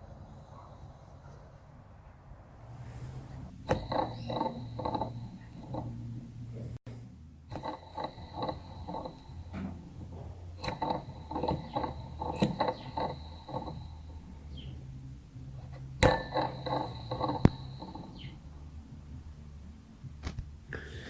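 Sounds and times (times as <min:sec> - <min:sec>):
turbocharger metallic clinking: 0:02.6 - 0:20.2
thin high ringing tone: 0:16.0 - 0:18.8.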